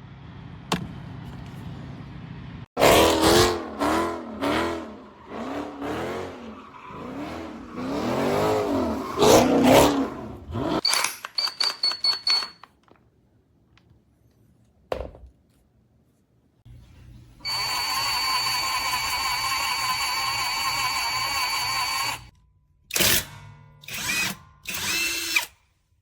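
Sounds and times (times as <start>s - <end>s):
impact wrench motor whining: 17.4s - 22.3s, 23.8s - 25.6s.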